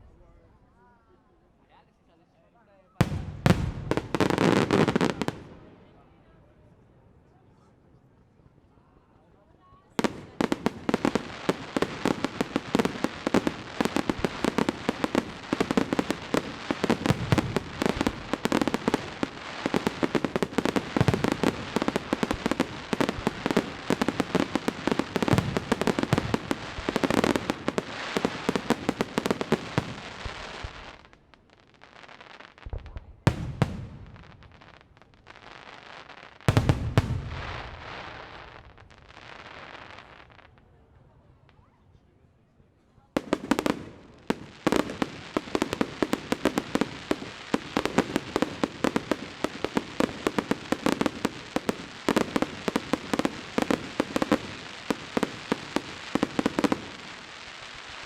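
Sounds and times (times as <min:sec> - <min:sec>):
fireworks booms with echoes: 0:03.0 - 0:05.7, 0:10.0 - 0:31.1, 0:32.4 - 0:40.3, 0:43.2 - 0:58.0
fireworks bangs and crackling: 0:03.0 - 0:05.9, 0:09.8 - 0:41.7, 0:43.1 - 0:58.0.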